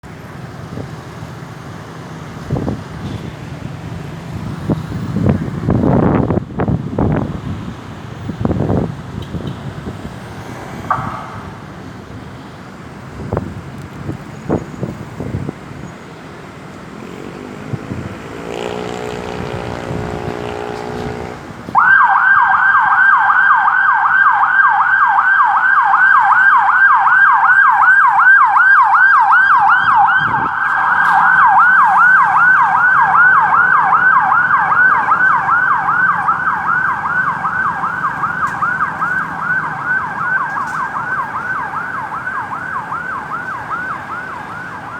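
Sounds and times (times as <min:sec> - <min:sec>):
road traffic noise: 0:00.0 - 0:44.9
ambulance siren yelping: 0:17.7 - 0:44.9.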